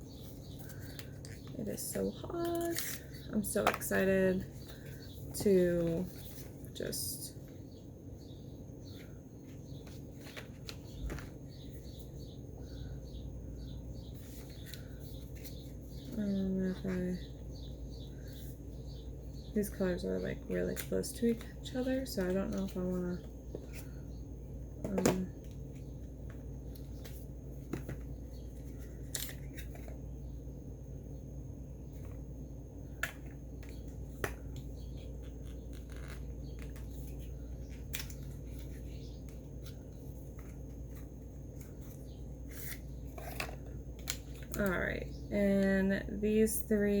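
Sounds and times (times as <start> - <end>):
low steady hum: 0.0 - 47.0
faint bird chirps: 4.4 - 20.5.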